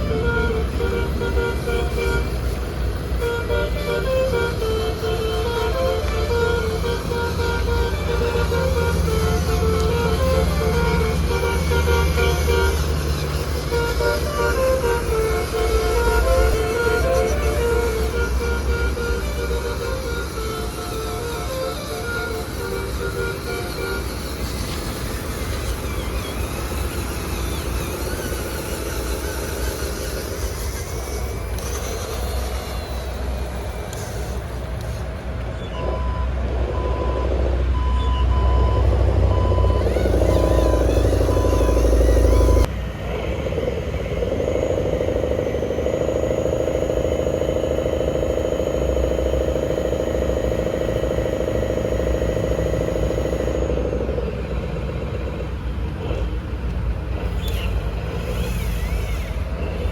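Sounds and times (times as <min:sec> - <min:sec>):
diesel truck engine running: 0:00.0 - 0:59.9
reversing beeps: 0:35.7 - 0:42.7.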